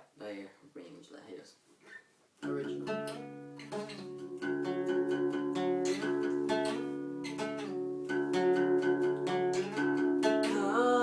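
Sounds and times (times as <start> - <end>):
guitar strumming chords: 2.4 - 11.0.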